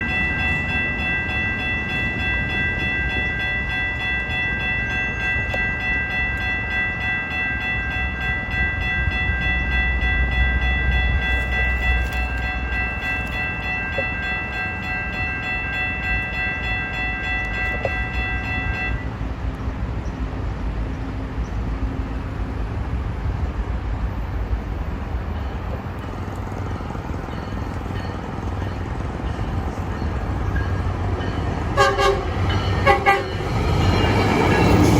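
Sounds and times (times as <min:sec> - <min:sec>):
train rumble: 0:00.0 - 0:34.9
train horn blast: 0:31.8 - 0:33.4.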